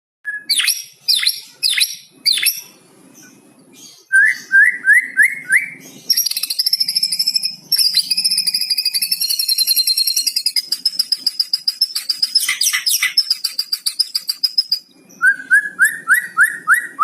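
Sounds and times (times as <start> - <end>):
bird singing varied song: 0.3 - 17.0.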